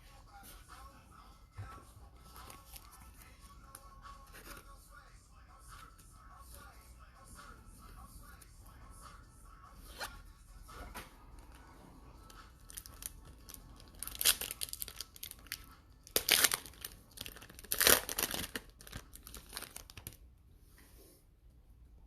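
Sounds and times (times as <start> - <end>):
wrapper tearing and crinkling: 12.6 - 20.2.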